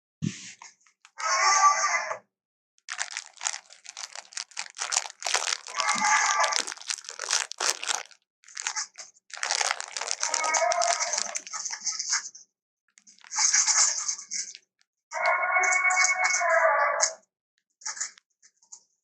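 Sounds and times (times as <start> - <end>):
elephant chewing food: 2.9 - 8.1
pitched squeaky sound: 2.9 - 12.0.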